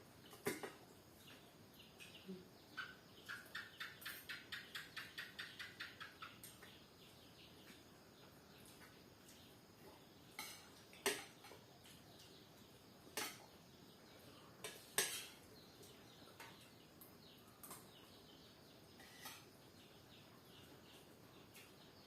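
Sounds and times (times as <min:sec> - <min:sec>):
cutlery clinking against plate: 0:00.3 - 0:00.8, 0:10.4 - 0:11.6, 0:13.1 - 0:13.4, 0:14.6 - 0:15.4, 0:19.0 - 0:19.5.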